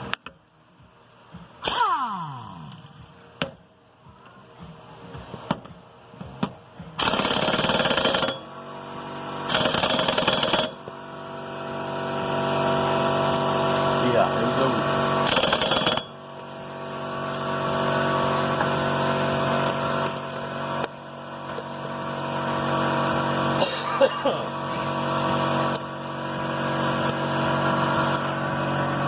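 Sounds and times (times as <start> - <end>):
impact wrench hammering: 2.6 - 3.6, 5.5 - 8.5, 9.5 - 10.9, 15.3 - 16.2
steady machine sound: 6.2 - 29.0.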